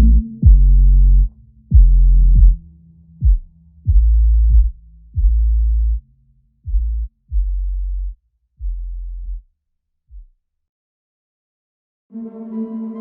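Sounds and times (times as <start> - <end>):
sharp kick drum: 0.0 - 0.8, 1.7 - 2.6, 3.2 - 5.5
electronic music with deep bass: 0.0 - 5.4.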